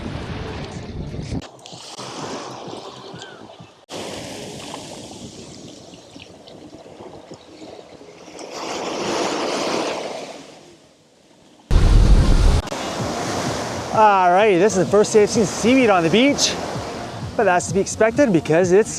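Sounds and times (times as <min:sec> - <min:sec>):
surf washing on sand: 0:11.7 - 0:18.3.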